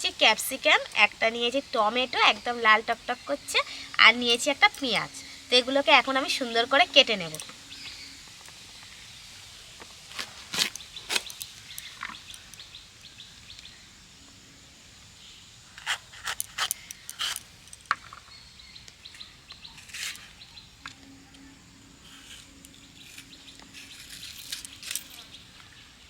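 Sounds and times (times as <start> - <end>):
faint birds chirping: 0.0 - 26.0.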